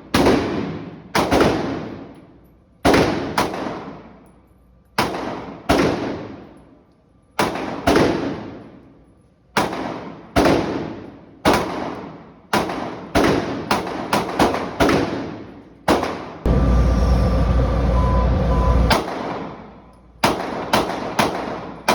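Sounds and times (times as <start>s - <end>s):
gunshots with ringing echo: 18.6s - 21.9s.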